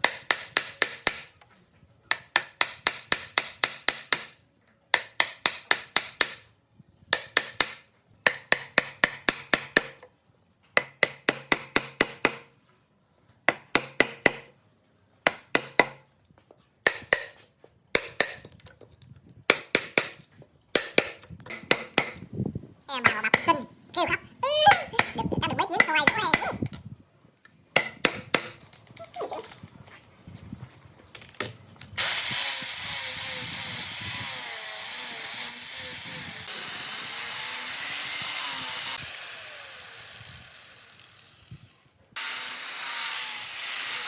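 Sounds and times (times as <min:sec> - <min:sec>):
hammering on wood: 0:00.0 - 0:01.3, 0:02.1 - 0:06.4, 0:07.1 - 0:10.0, 0:10.8 - 0:12.5, 0:13.5 - 0:14.5, 0:15.2 - 0:16.0, 0:16.8 - 0:18.5, 0:19.5 - 0:22.2, 0:27.8 - 0:28.6.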